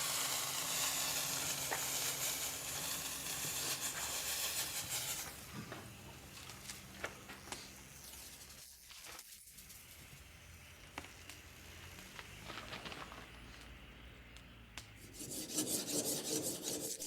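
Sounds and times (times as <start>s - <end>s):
faint hiss: 0.0s - 14.4s
blade grinding scrape: 15.0s - 17.0s.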